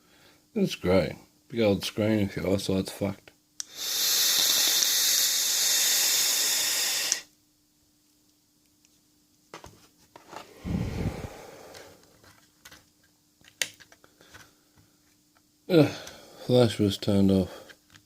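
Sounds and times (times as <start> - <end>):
breathy vape hiss: 3.6 - 7.3, 10.4 - 12.3, 15.7 - 16.8
short low rumble: 10.6 - 11.8.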